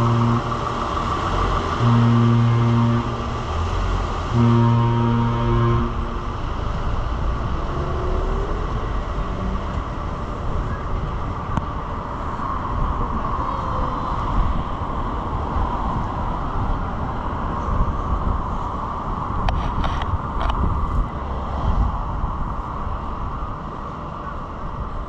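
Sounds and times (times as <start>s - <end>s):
ship's horn: 0.0s - 8.6s
steady low rumble: 0.0s - 25.0s.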